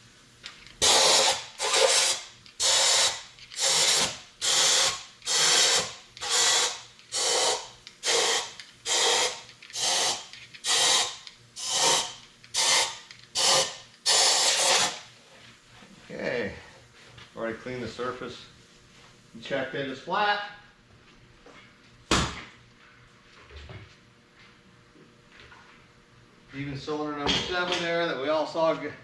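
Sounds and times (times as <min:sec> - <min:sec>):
compressed air hissing blasts: 0:00.7 - 0:15.1.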